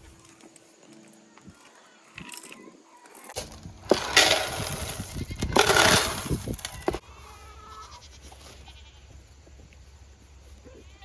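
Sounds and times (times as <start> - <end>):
loud crunching rattling noise: 3.3 - 7.0.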